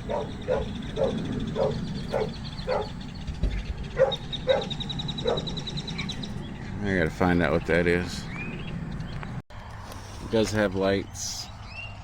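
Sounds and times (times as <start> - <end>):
animal calling: 0.0 - 6.4.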